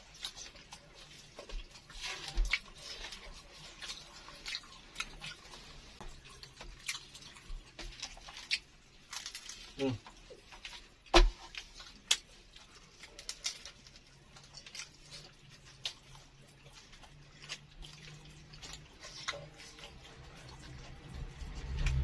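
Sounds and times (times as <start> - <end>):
crisp crunches of eating: 0.0 - 22.0.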